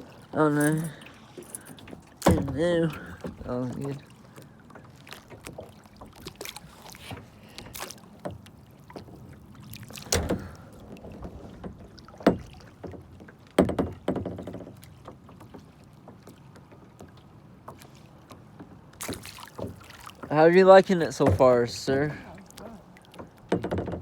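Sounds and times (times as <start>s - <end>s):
kayak gear clicking and knocking: 0.3s - 3.6s, 5.2s - 9.2s, 9.9s - 17.2s, 22.6s - 24.0s
sharp thumps: 2.2s - 2.6s.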